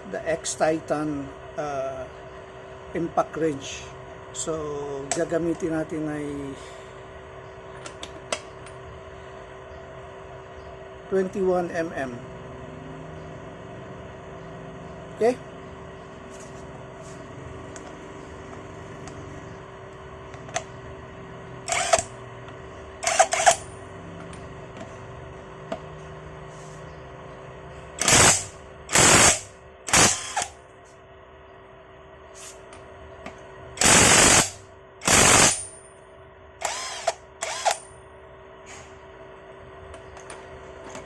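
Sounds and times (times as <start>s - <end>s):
impact wrench hammering: 21.7s - 22.1s, 28.0s - 30.6s, 33.8s - 35.8s.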